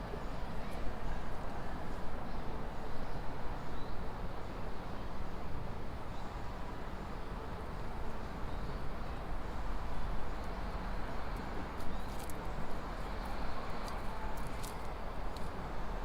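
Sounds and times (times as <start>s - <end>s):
distant city traffic hum: 0.0s - 16.0s.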